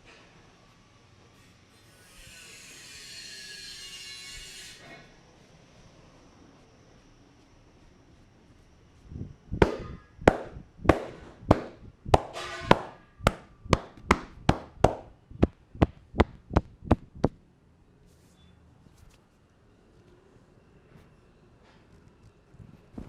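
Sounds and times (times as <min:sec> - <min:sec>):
hands slapping a head: 0:09.6 - 0:17.4.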